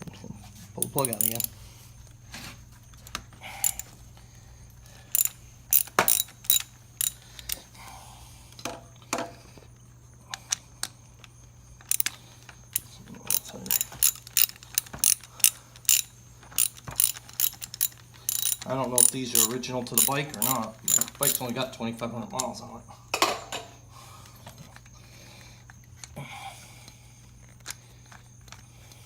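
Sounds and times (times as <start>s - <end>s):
ratchet wrench clicking: 0.8s - 1.6s, 3.0s - 4.0s, 5.1s - 7.6s, 11.8s - 21.6s.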